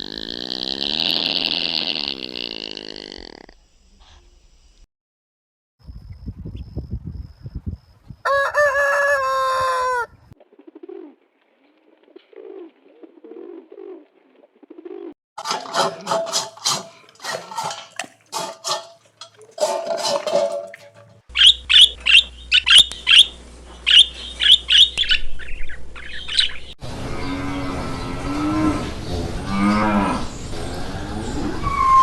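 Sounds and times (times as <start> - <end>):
bird chirping: 21.3 - 26.8
cow mooing: 27.1 - 30.3.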